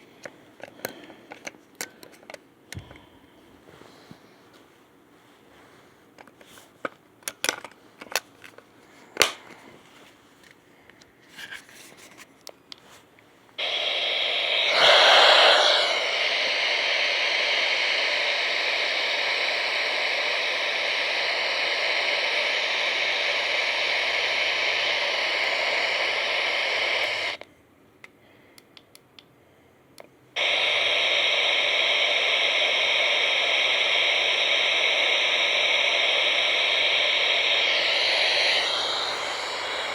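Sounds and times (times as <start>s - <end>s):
radio static hiss: 13.6s - 27.4s, 30.4s - 39.9s.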